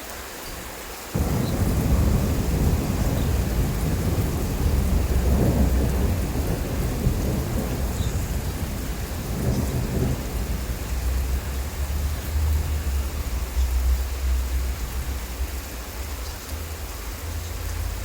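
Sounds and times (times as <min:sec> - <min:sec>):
steady rain: 0:00.0 - 0:18.0
low rumble of thunder: 0:01.2 - 0:18.0.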